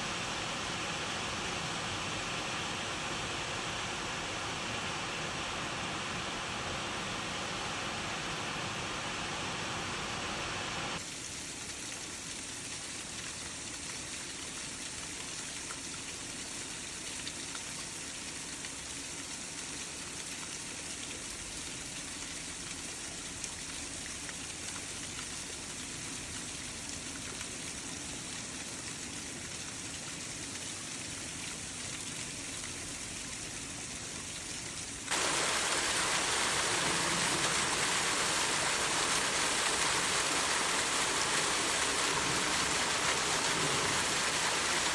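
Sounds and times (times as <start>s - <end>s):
waterfall rushing: 35.1s - 44.9s.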